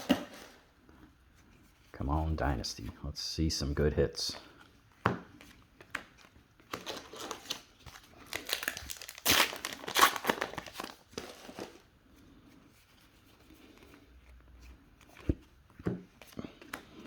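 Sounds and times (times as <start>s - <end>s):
wrapper being torn and crinkled: 6.7s - 11.8s.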